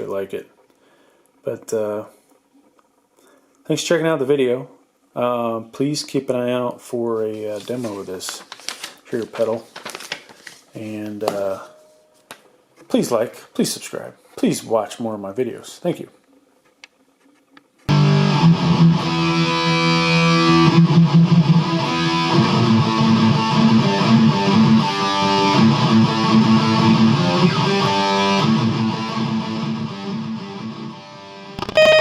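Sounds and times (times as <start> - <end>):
distorted electric guitar: 17.9 - 32.0.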